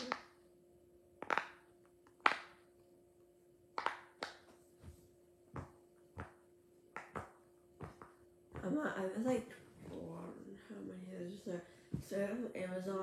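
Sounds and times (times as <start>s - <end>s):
fidget toy bubbles popping: 6.9s - 8.2s.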